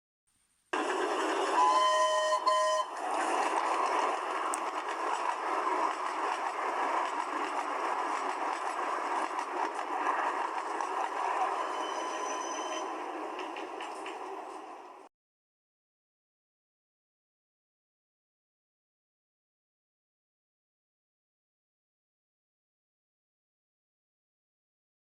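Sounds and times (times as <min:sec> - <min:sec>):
train running: 0:00.7 - 0:15.1
train horn blasts: 0:01.5 - 0:03.2.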